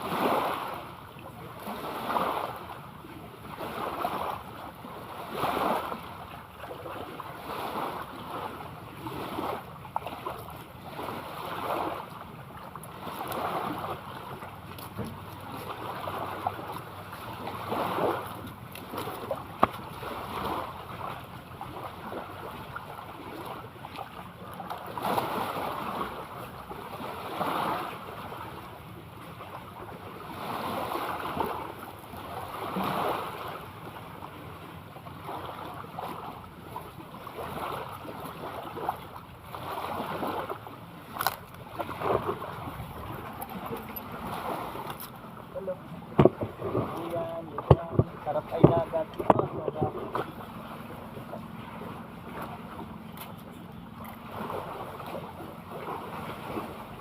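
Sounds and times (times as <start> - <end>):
sea water sloshing: 0.0 - 57.0.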